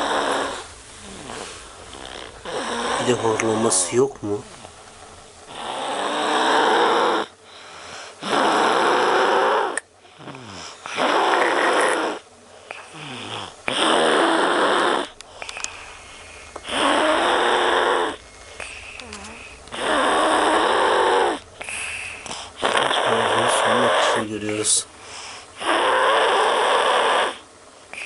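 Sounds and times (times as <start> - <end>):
boy snoring loudly: 0.0 - 3.9, 5.5 - 7.4, 8.2 - 12.2, 12.8 - 15.2, 16.6 - 18.2, 19.0 - 21.9, 22.6 - 24.3, 25.6 - 28.0
quiet breathing: 7.1 - 8.2, 10.0 - 13.7, 15.0 - 25.6.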